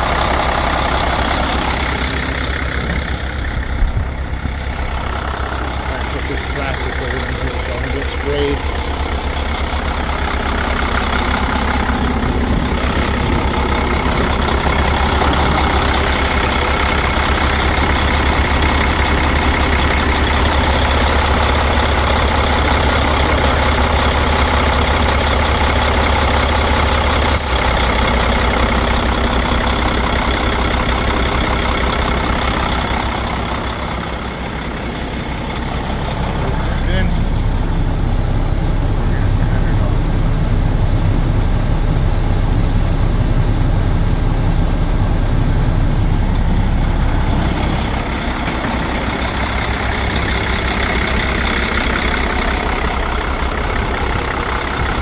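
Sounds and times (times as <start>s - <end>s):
diesel engine idling: 0.0s - 55.0s.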